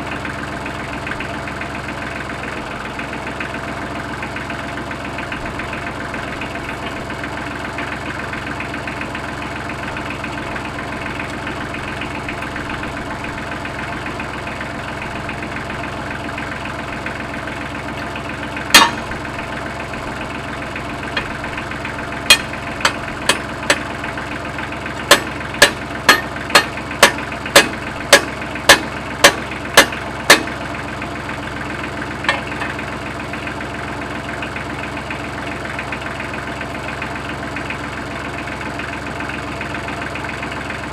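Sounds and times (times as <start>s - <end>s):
tractor engine idling: 0.0s - 40.9s
sharp knocks: 18.7s - 19.2s, 22.3s - 23.9s, 25.1s - 30.6s, 32.3s - 32.8s.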